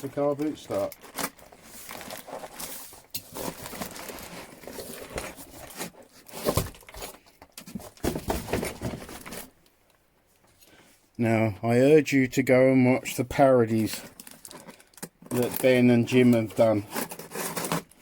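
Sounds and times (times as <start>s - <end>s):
paper and packaging rustling: 0.0s - 9.7s, 13.4s - 18.0s.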